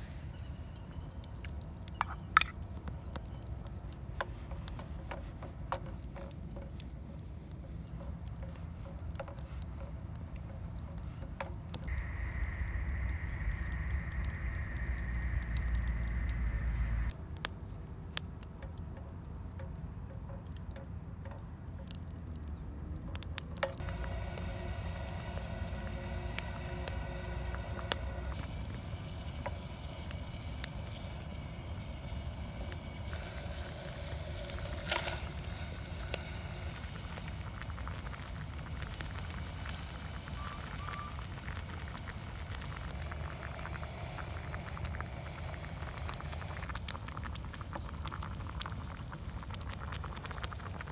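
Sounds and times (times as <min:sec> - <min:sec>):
wood fire crackling: 0:00.0 - 0:50.9
low rumble: 0:11.9 - 0:17.2, 0:23.8 - 0:33.5.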